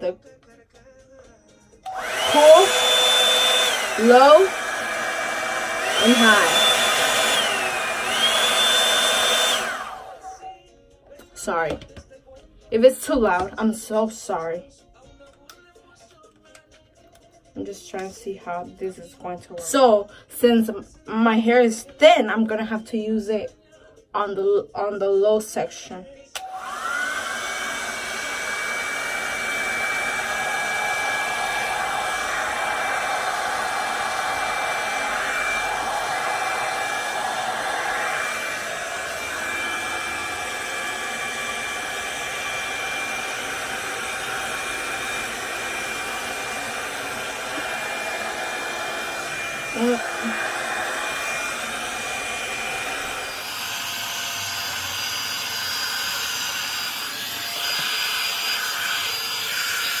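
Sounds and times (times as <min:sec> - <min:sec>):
hot-air dryer brush running: 0:01.8 - 0:10.4, 0:26.4 - 1:00.0.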